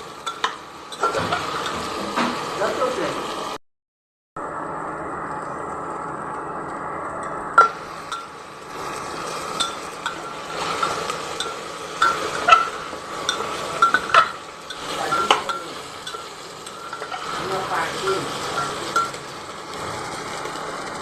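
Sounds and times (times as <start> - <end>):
frying sizzle: 0.0 - 3.6, 4.4 - 21.0
metal spoon scraping a pan: 0.2 - 2.1, 7.6 - 19.2.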